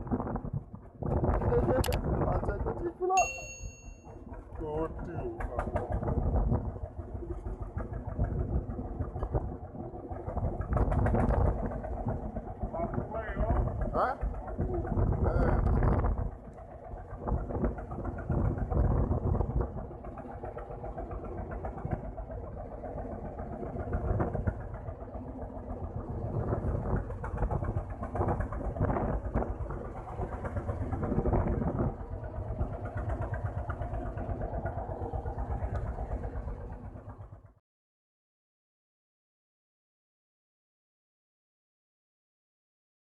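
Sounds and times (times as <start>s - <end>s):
boat engine running: 0.0s - 37.6s.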